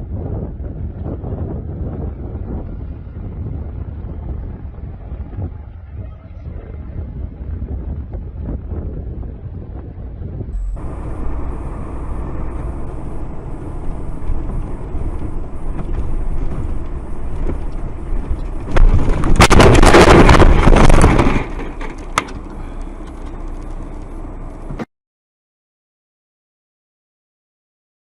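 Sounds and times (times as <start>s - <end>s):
vehicle road and engine rumble: 0.0s - 6.0s, 10.5s - 24.9s
loud rushing noise: 10.6s - 22.8s.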